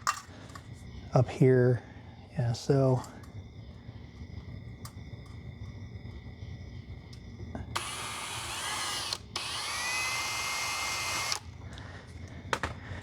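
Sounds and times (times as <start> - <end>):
power drill whining: 7.6 - 11.8.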